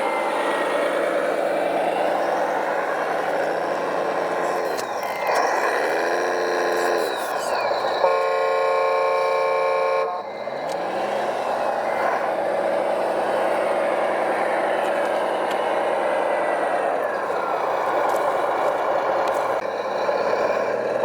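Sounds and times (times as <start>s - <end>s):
engine revving: 0.0s - 21.0s
truck horn blast: 8.0s - 10.3s.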